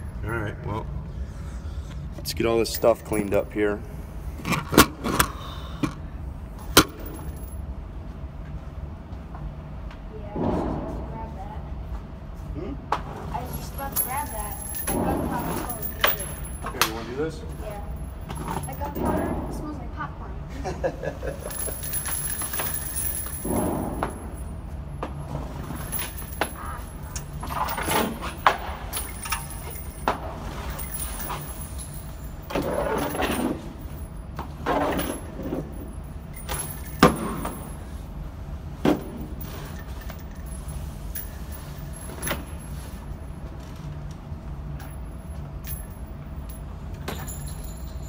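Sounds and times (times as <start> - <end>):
steady low rumble: 5.9 - 32.5.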